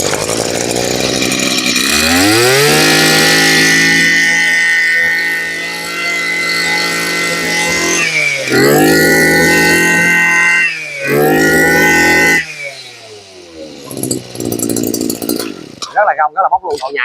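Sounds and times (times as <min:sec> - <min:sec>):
brush cutter engine revving: 0:00.0 - 0:16.0.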